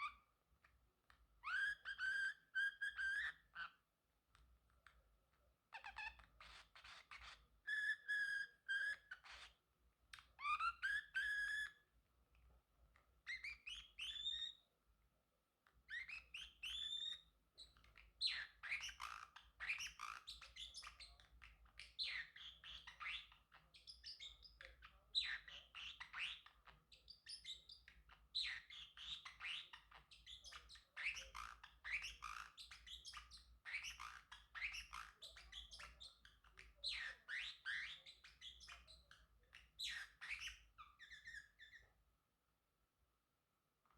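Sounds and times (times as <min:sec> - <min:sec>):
parrotlet chirping: 0:00.0 - 0:00.3, 0:01.4 - 0:03.8, 0:05.7 - 0:11.9, 0:13.2 - 0:14.7, 0:15.8 - 0:41.9.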